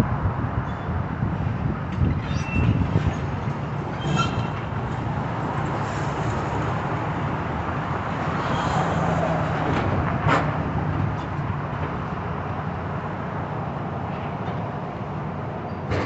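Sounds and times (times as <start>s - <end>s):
demolition machinery rumbling: 15.8s - 16.0s.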